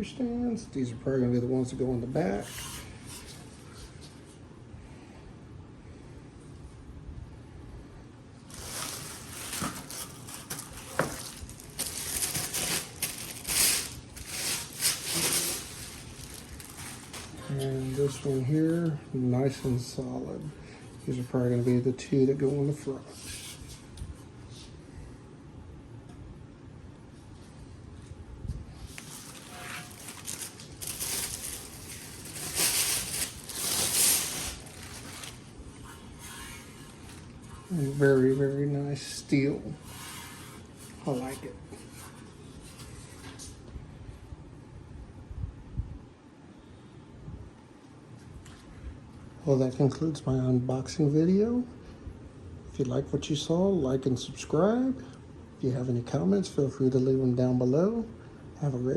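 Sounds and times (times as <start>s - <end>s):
plastic wrap crinkling: 8.5s - 18.8s, 28.9s - 38.5s.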